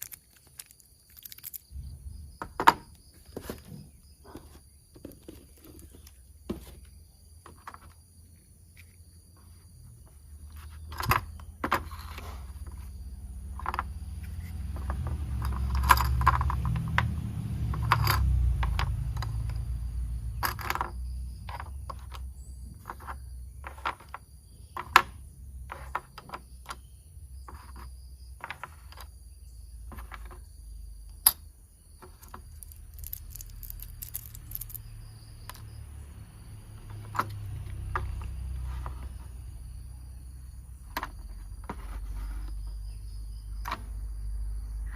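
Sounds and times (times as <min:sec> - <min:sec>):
plastic toy parts clicking: 0:00.0 - 0:01.6, 0:32.2 - 0:34.8
low rumbling handling noise: 0:01.6 - 0:08.1, 0:08.7 - 0:35.8.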